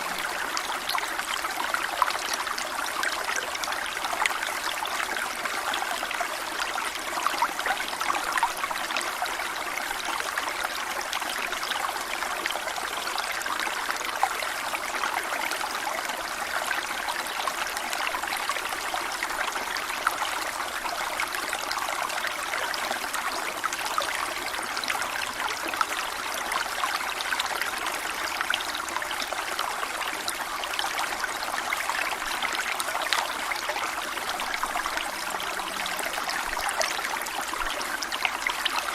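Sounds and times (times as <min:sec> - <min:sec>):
stream babbling over stones: 0:00.0 - 0:38.9.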